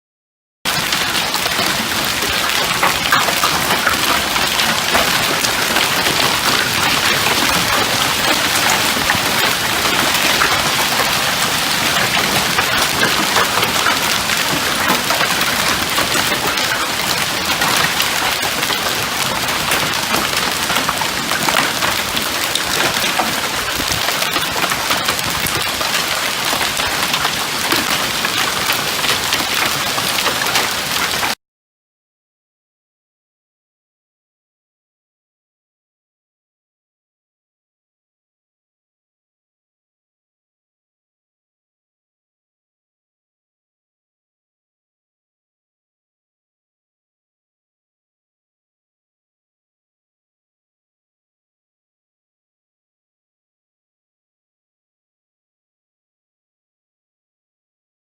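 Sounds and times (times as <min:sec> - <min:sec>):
heavy rain pouring: 0:00.7 - 0:31.4.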